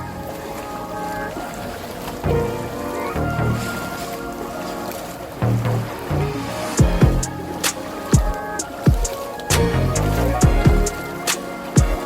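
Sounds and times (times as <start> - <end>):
electronic music with bass: 5.5 - 7.4, 8.1 - 12.0
deep kick drum hits: 6.8 - 7.3, 10.4 - 10.9.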